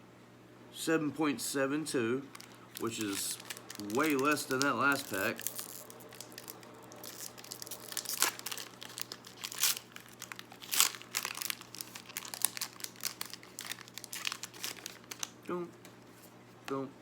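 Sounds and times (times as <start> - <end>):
wrapper crinkled and torn open: 2.3 - 15.4.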